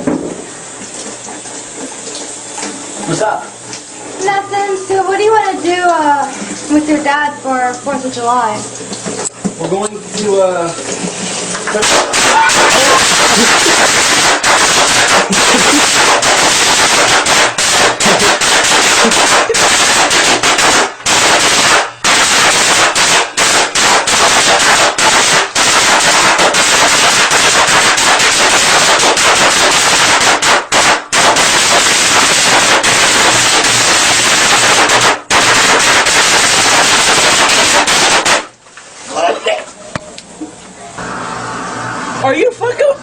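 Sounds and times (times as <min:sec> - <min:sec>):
firecrackers crackling: 0:11.7 - 0:38.6.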